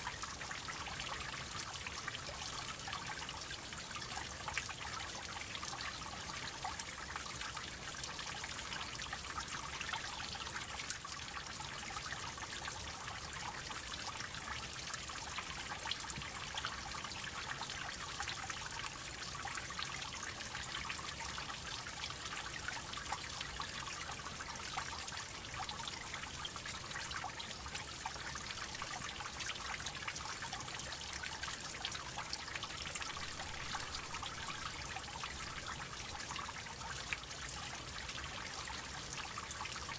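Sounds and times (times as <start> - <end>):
water trickling: 0.0 - 39.9
water drips: 21.2 - 39.9.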